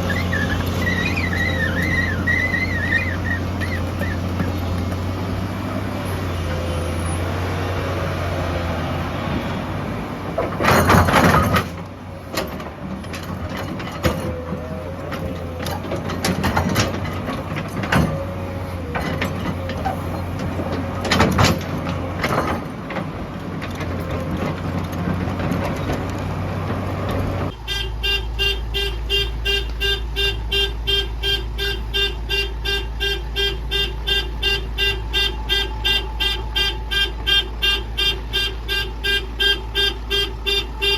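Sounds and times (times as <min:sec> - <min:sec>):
excavator engine running: 0:00.0 - 0:40.9
vehicle horn beeping rapidly: 0:27.5 - 0:40.9.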